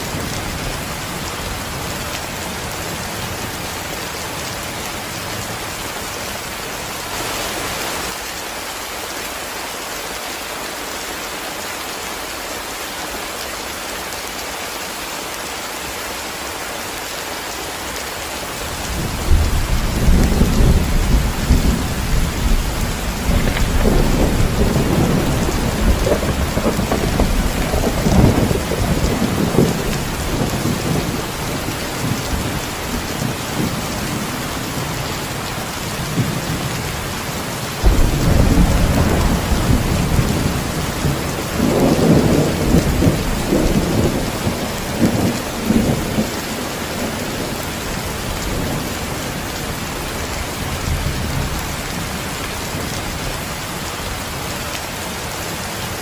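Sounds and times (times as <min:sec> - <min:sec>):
heavy rain hissing: 0:00.0 - 0:56.0
deep thunder rumbling: 0:18.8 - 0:34.8, 0:37.8 - 0:47.3.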